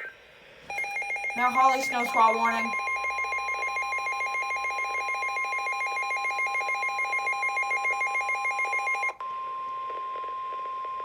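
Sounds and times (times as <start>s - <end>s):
rapidly pulsing alarm tone: 0.0s - 9.2s
steady high-pitched tone: 0.8s - 5.2s.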